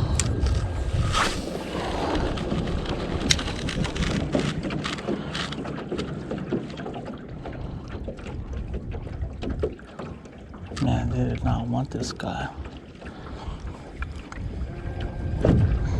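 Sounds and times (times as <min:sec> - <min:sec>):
wind on microphone: 0:00.0 - 0:06.6, 0:13.2 - 0:15.9.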